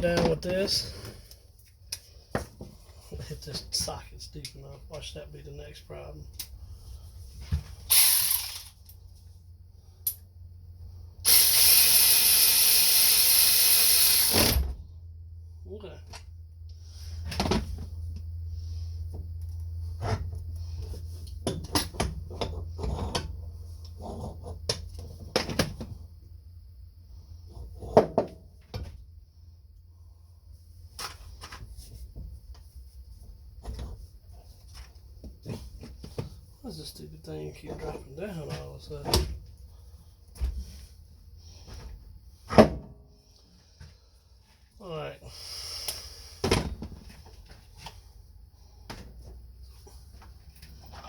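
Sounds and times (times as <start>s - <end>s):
cordless ratchet motor running: 7.9s - 8.8s, 11.3s - 14.6s
ratchet click: 7.9s - 9.0s.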